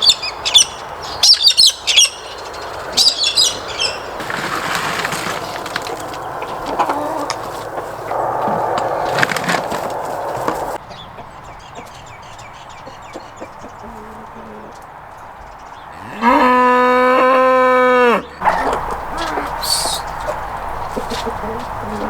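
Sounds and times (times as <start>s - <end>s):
outdoor background: 0.0s - 22.0s
farm animal calling: 3.0s - 10.8s, 15.9s - 22.0s.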